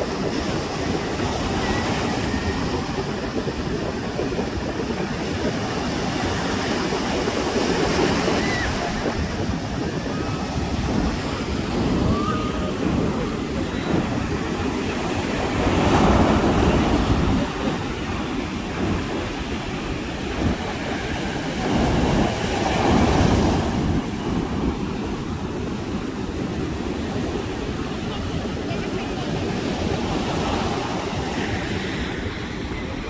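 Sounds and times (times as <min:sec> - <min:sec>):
sea waves breaking on beach: 0:00.0 - 0:33.0.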